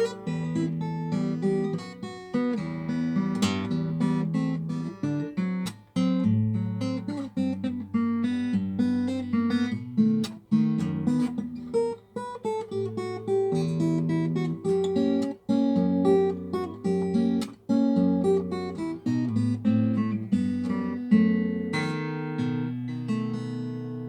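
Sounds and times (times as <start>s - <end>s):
acoustic guitar playing: 0.0s - 24.0s.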